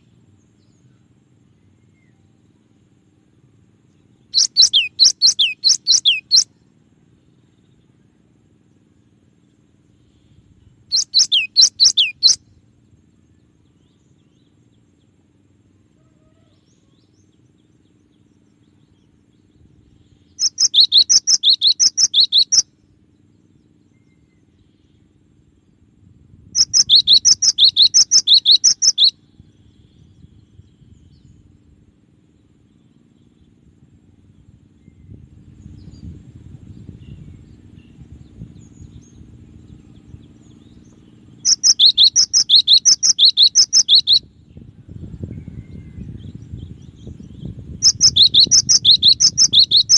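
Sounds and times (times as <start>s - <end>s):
bird singing sharp notes: 4.4s - 6.4s, 10.9s - 12.4s, 20.4s - 22.6s, 26.6s - 29.1s, 41.5s - 44.2s, 47.8s - 49.9s.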